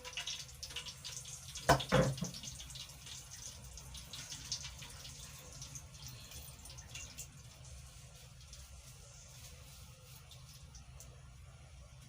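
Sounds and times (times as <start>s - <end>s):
liquid splashing and dripping: 0.0s - 11.2s
knock: 1.7s - 2.3s.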